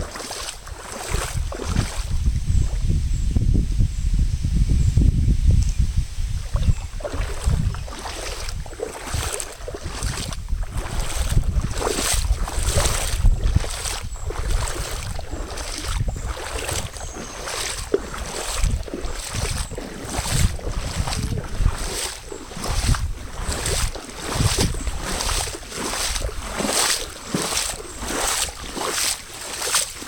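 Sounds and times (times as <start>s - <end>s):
boots splashing through water: 0.0s - 2.3s, 6.4s - 30.0s
wind buffeting microphone: 0.0s - 29.8s.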